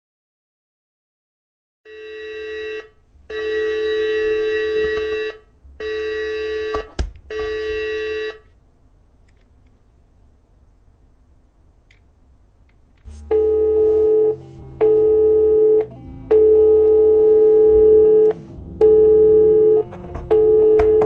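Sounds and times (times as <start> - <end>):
buzzing electronic alarm tone: 13.2 - 21.0.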